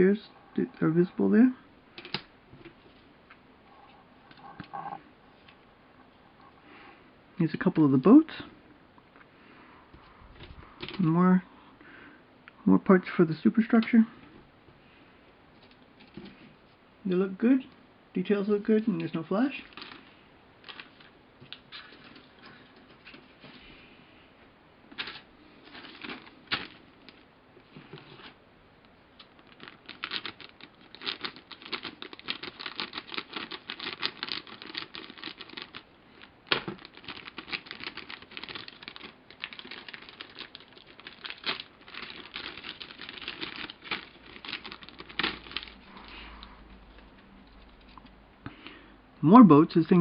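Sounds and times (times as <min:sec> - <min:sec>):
plastic bags crackling: 0:19.0 - 0:23.4, 0:24.9 - 0:27.3, 0:29.2 - 0:46.3.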